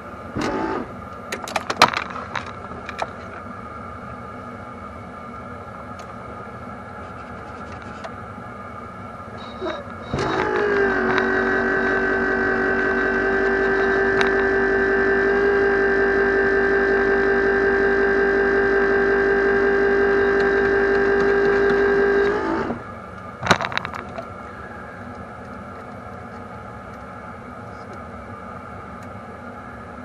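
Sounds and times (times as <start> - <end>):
loud electrical whine: 0.0 - 3.4, 9.2 - 25.1.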